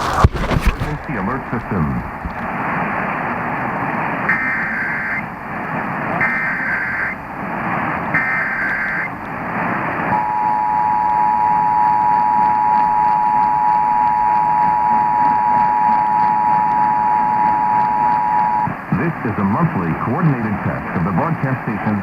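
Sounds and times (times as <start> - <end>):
data tone bursts: 10.1 - 18.8
two-tone attention signal: 10.2 - 18.7.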